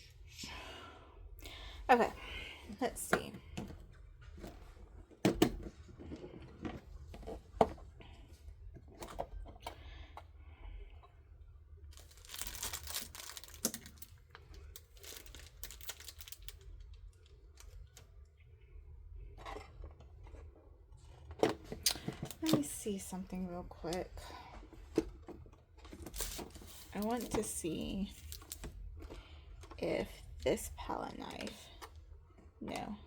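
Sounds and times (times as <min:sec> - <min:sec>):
packaging crinkling: 0:11.9 - 0:18.0, 0:25.9 - 0:28.7.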